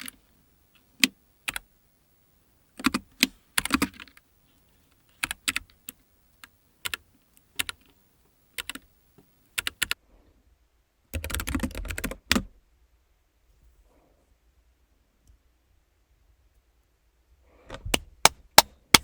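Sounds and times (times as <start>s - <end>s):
mechanical keyboard typing: 2.8s - 4.2s, 5.2s - 6.0s, 7.6s - 7.9s, 8.6s - 8.9s, 9.6s - 10.0s, 11.2s - 12.5s.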